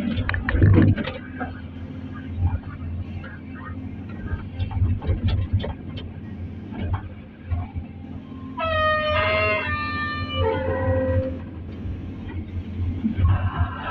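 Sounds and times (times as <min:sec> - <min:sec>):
low engine hum: 0:00.0 - 0:13.9
vehicle horn honking: 0:08.6 - 0:11.4.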